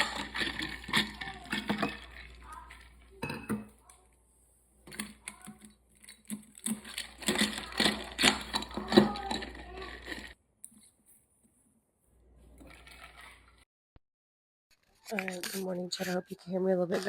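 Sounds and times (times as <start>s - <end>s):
kitchen items clicking and knocking: 0.0s - 4.2s, 4.8s - 10.4s.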